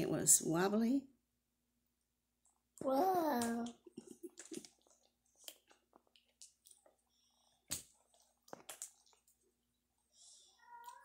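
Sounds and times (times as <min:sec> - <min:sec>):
small wet clicks and pops: 0:03.4 - 0:09.8.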